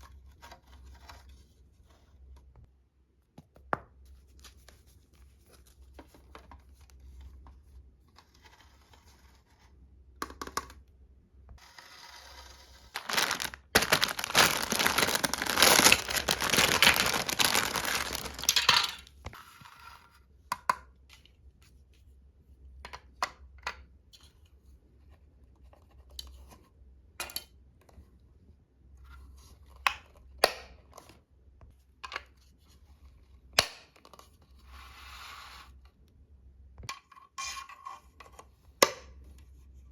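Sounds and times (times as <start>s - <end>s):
packaging crinkling and tearing: 12.9s - 19.0s.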